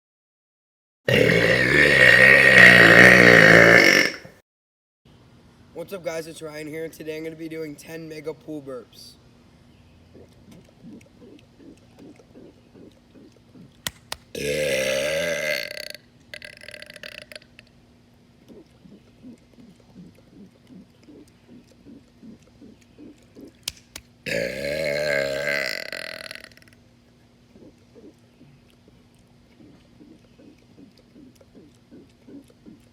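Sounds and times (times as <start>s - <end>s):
man burping: 1.1s - 4.4s, 14.4s - 17.6s, 24.3s - 26.7s.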